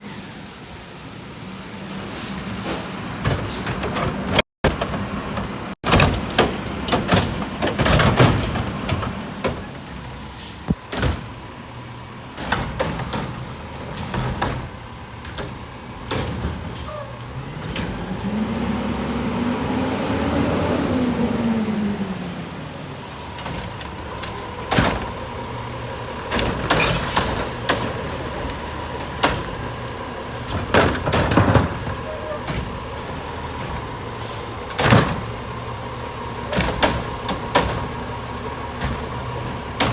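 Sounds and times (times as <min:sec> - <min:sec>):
garbage truck engine revving: 0:11.7 - 0:39.9
high squeaks: 0:21.7 - 0:24.8.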